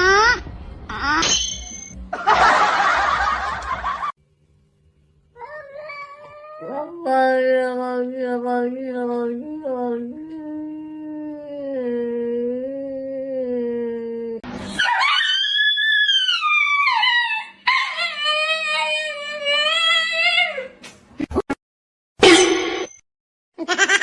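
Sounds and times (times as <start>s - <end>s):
dog howling: 14.8s - 20.6s.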